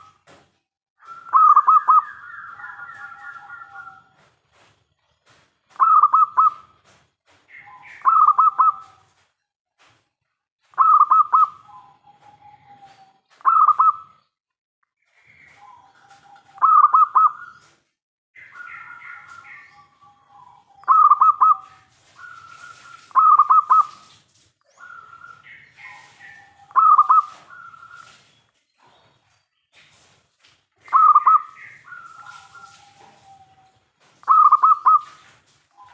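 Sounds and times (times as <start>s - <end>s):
doves cooing: 1.0s - 4.2s, 15.3s - 17.6s, 24.8s - 28.1s, 30.8s - 35.2s
softer higher bird calls: 1.0s - 4.2s, 5.7s - 6.8s, 7.5s - 9.1s, 10.7s - 14.3s, 15.0s - 17.8s, 18.4s - 29.2s, 30.8s - 35.9s.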